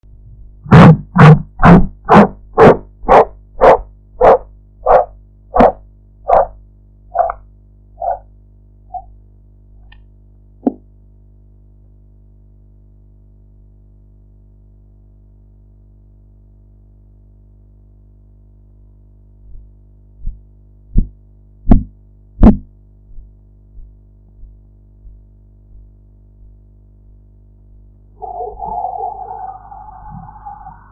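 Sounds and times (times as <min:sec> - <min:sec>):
faint steady hum: 0:00.0 - 0:30.9
pulse thumps through stethoscope: 0:00.6 - 0:06.5, 0:19.5 - 0:26.6.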